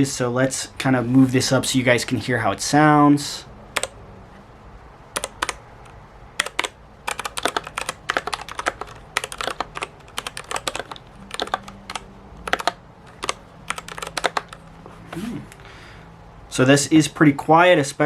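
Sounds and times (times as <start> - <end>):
mechanical keyboard typing: 5.2 - 5.6, 6.4 - 14.6.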